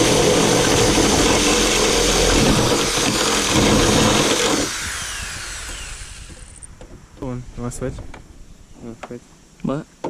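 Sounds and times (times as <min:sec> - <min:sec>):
power drill boring through sheet metal: 0:00.0 - 0:06.7.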